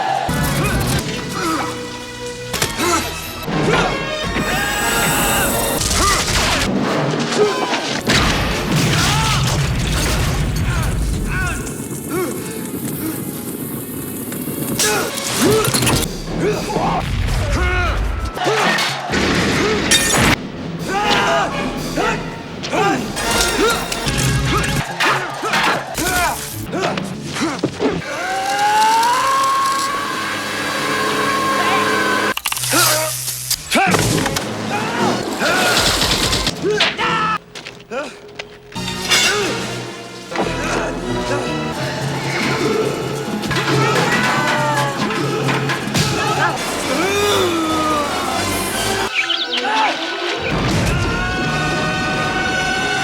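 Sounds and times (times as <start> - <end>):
film music: 0.0 - 53.0
man grunting and crying out: 42.2 - 48.5
hits and crashes: 42.4 - 49.0.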